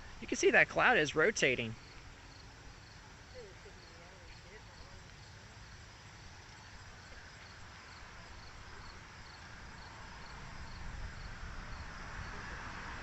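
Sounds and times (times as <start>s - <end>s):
insects chirping: 0.0s - 13.0s
wind rumbling on microphone: 8.5s - 13.0s.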